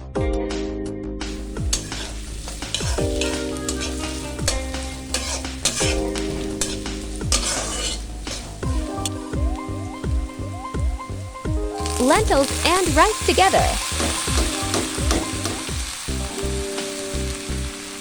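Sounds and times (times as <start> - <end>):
onion sizzling in oil: 1.2 - 18.0
spoon scraping and knocking pan: 1.3 - 9.4, 11.8 - 15.9.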